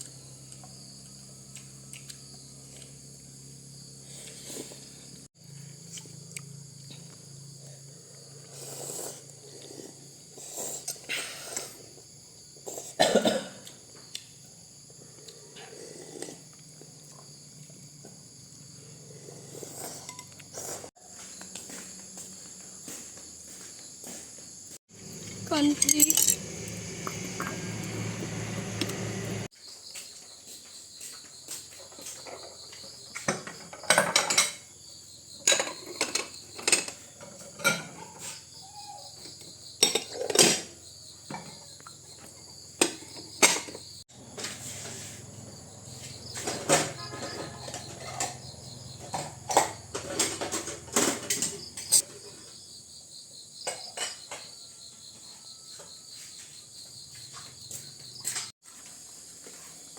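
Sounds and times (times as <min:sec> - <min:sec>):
insects chirring: 0:00.0 - 0:59.9.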